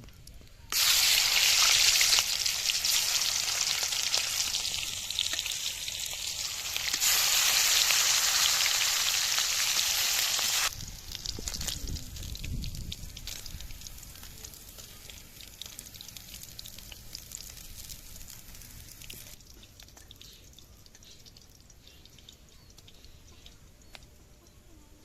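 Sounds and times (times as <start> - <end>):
crackles and pops: 0.0 - 24.2
food sizzling in a pan: 0.7 - 19.4.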